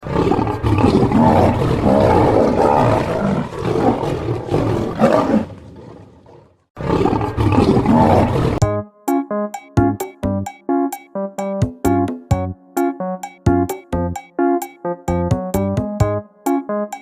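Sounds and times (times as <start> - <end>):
lions growling: 0.0 - 8.6.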